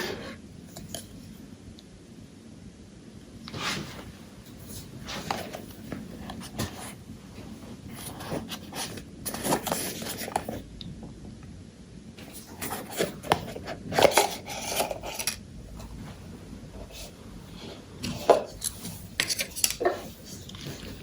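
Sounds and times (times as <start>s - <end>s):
box packaging handled and opened: 3.5s - 10.6s, 12.2s - 21.0s.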